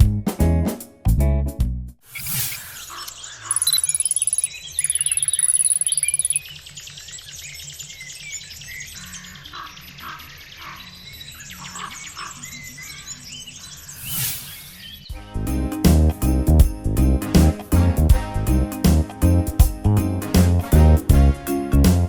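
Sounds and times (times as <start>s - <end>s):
birds chirping: 2.6s - 15.2s
background music: 15.1s - 22.0s.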